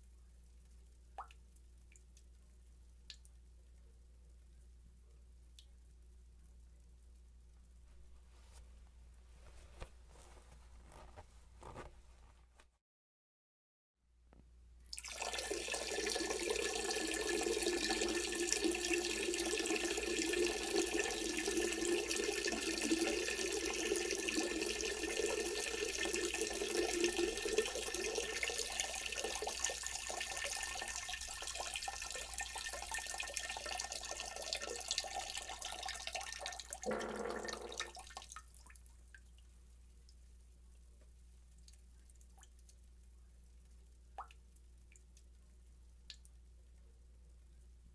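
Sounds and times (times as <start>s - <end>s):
water running from a tap: 14.9s - 38.4s.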